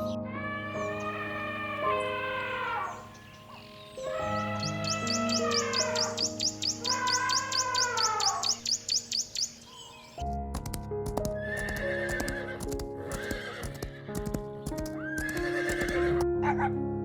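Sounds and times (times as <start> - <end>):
soft background music: 0.0 - 17.0
hoof clops: 10.4 - 16.2
horse whinnying: 11.4 - 16.2.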